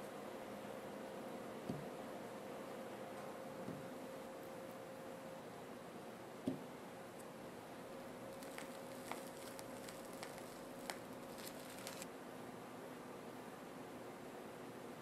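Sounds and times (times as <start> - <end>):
steady hiss: 8.3 - 12.1.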